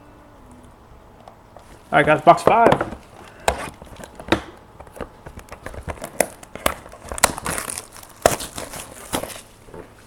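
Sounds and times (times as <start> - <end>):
plastic shrink wrap tearing: 5.8 - 9.5.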